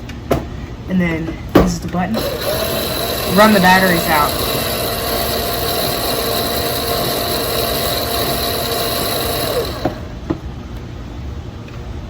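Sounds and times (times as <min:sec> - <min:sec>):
toy car electric motor whining: 0:02.2 - 0:10.2.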